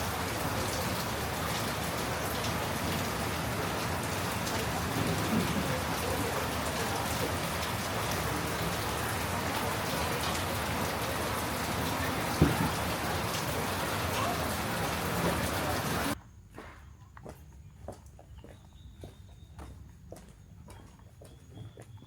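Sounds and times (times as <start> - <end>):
heavy rain pattering: 0.0 - 16.2
loud knock: 12.4 - 12.8.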